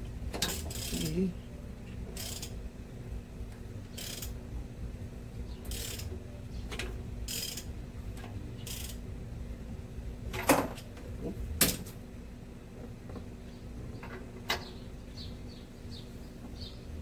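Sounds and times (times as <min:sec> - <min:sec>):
ratchet wrench ratcheting: 0:00.4 - 0:01.2, 0:02.2 - 0:02.6, 0:03.9 - 0:04.4, 0:05.6 - 0:06.1, 0:07.3 - 0:07.7, 0:08.6 - 0:09.0.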